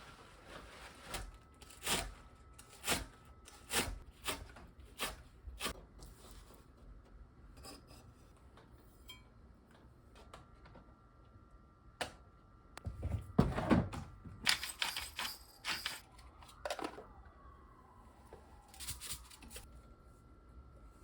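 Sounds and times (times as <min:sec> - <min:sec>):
kitchen knocks and clatters: 0:12.8 - 0:16.0.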